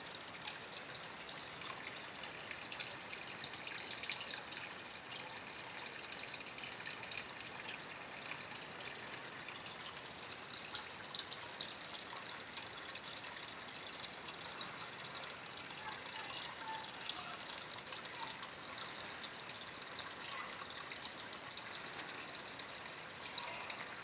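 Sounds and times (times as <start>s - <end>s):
water trickling into fish tank: 0.0s - 24.0s.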